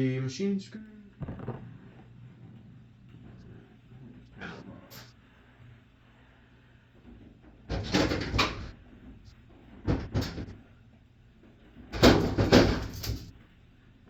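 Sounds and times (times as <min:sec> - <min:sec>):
metal panels clattering and knocking: 0:07.1 - 0:10.7, 0:11.8 - 0:13.3.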